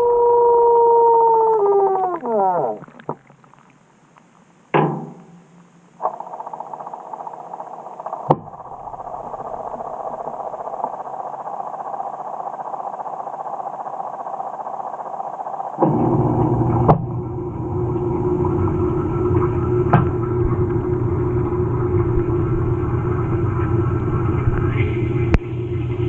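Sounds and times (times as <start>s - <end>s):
knock: 4.8s - 5.2s
washing machine running: 6.0s - 26.0s.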